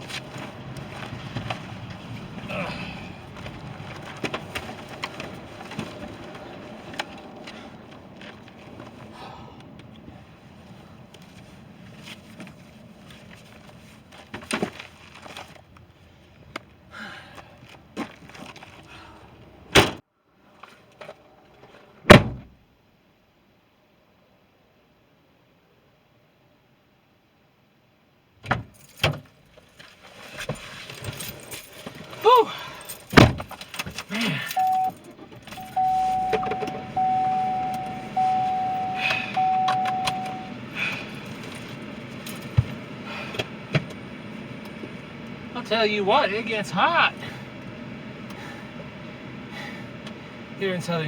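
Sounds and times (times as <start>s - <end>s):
car doors slamming: 19.7s - 20.0s, 22.1s - 22.5s, 33.0s - 44.0s
keys jingling: 28.7s - 42.8s.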